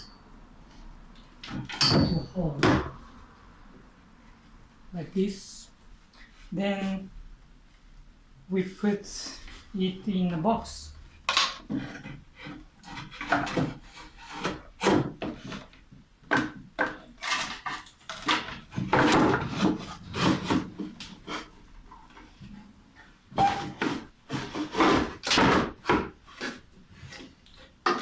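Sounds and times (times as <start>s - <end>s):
plastic parts knocking and scraping: 11.2s - 22.7s, 23.3s - 28.0s.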